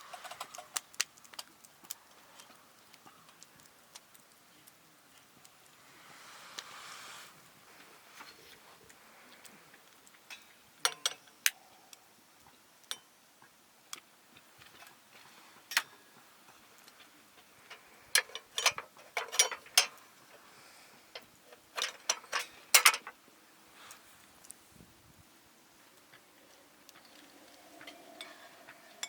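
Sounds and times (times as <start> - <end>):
lantern clicks and metallic clinks: 10.3 - 11.6, 17.6 - 20.0, 21.1 - 23.2.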